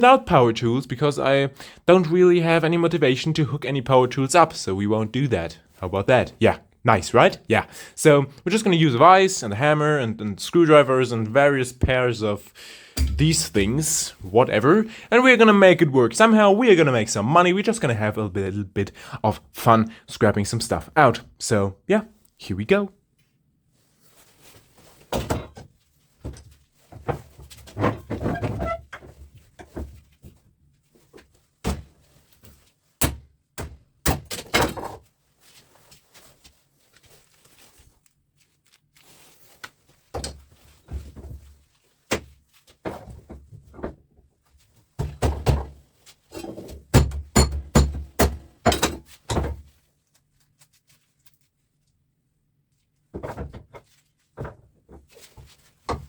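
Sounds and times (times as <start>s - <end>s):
metal parts knocking and clanking: 13.0s - 13.6s, 46.3s - 49.6s
hammer blows: 13.0s - 13.8s.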